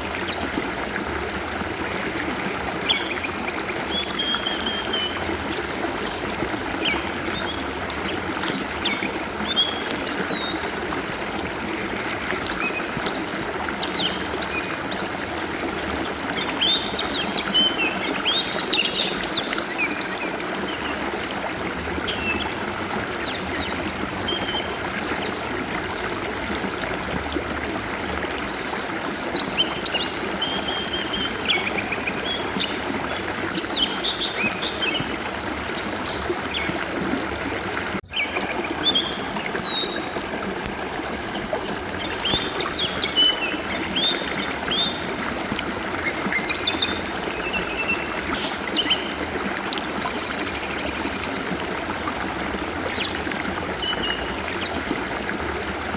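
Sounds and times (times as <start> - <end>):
stream water trickling: 0.0 - 55.9
bird whistling and chirping: 3.9 - 10.6.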